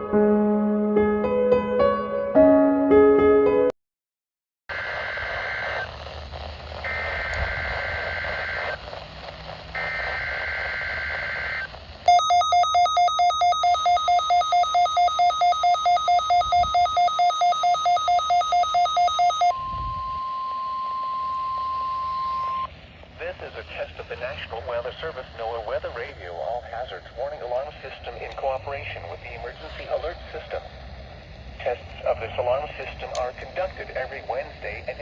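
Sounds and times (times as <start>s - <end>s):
warbling digital data bursts: 9.8s - 19.5s
steady alarm tone: 9.8s - 22.7s
rapid pulsing alert beeps: 12.1s - 19.5s.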